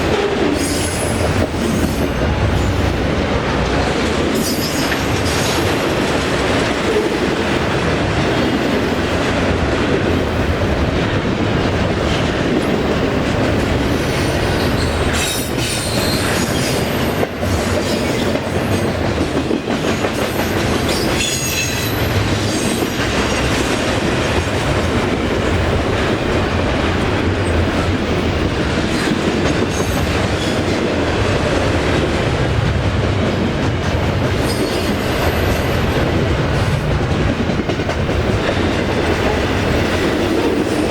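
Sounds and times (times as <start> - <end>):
train wheels on rails: 0.0 - 40.9.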